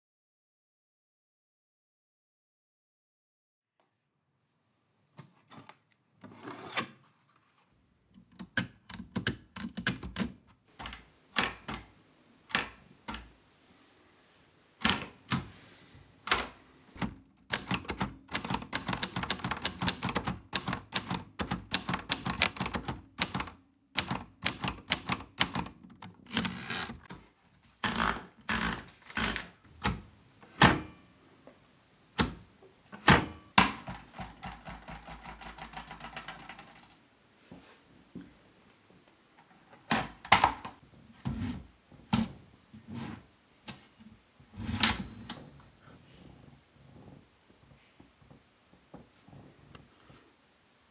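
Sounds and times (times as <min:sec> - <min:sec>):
typewriter keys clacking: 0:08.3 - 0:13.4, 0:16.3 - 0:27.1, 0:33.6 - 0:37.0.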